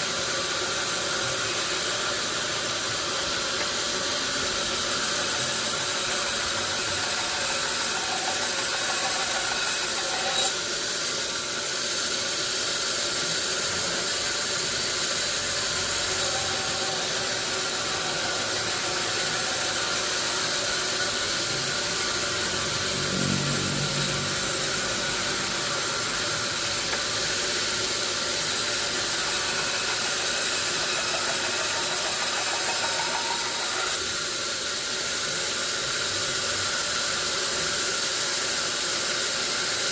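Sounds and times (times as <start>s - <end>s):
sawmill machinery running: 0.0s - 39.9s
deeper machine hum: 21.3s - 28.4s.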